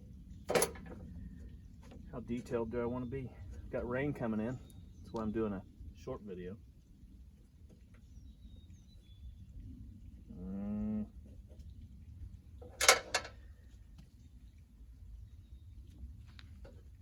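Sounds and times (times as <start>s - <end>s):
faint bird chirps: 7.7s - 11.8s
person humming: 10.3s - 11.1s.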